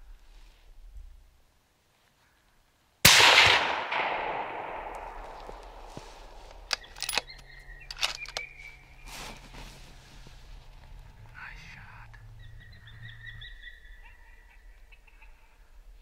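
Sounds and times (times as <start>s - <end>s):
rifle shot echoing: 3.0s - 6.8s
sharp clicks: 6.4s - 8.6s.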